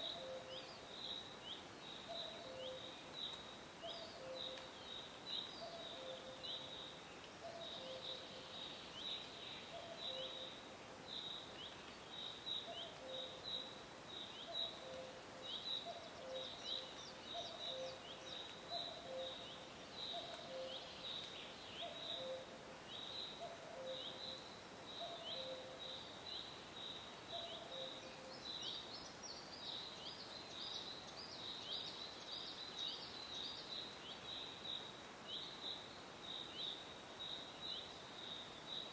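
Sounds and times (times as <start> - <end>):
cuckoo calling: 0.0 - 0.7, 2.1 - 2.9, 18.7 - 19.5, 20.1 - 20.9.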